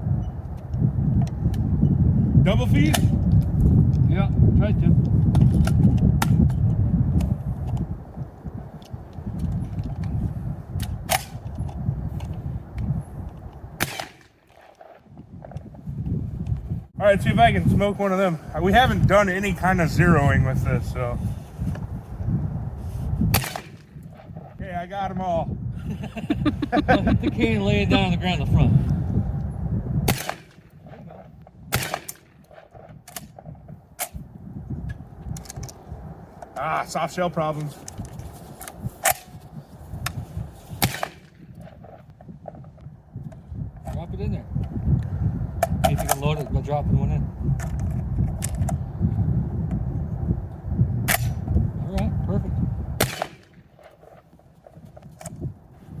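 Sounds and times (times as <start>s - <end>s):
shotgun sharp cracks: 13.8s - 14.7s, 23.3s - 23.9s, 30.1s - 30.6s, 31.7s - 32.4s, 40.8s - 41.4s, 53.0s - 53.6s.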